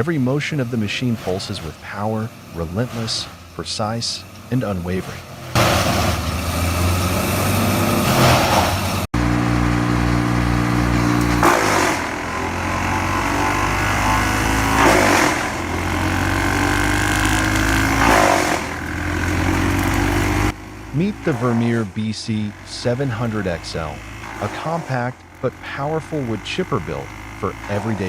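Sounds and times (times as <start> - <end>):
wood chipper engine running: 0.0 - 28.0
wood being chipped: 9.2 - 28.0.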